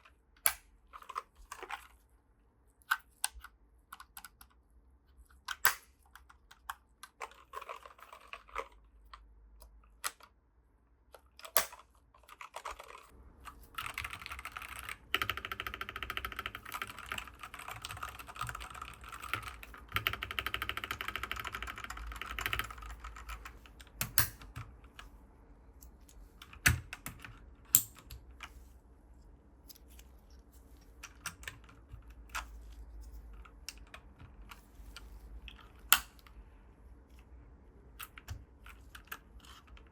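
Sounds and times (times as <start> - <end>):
mechanical keyboard typing: 11.4 - 24.7, 26.4 - 28.2.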